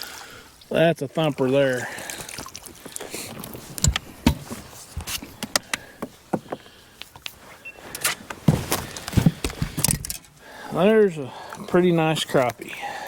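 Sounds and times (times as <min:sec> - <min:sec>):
knocks and thumps in a boat: 0:03.3 - 0:06.8, 0:08.3 - 0:10.2.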